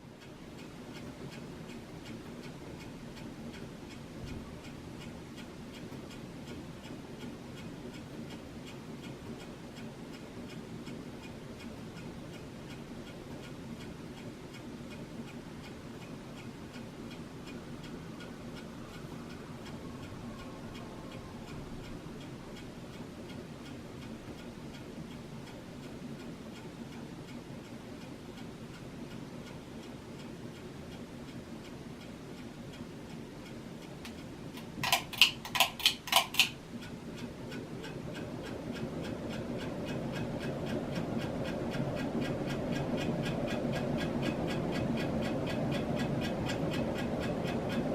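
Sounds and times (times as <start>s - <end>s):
ceiling fan motor hum: 0.0s - 47.9s
fan bearing clicking: 0.0s - 47.9s
sharp loud clicks: 34.6s - 36.6s.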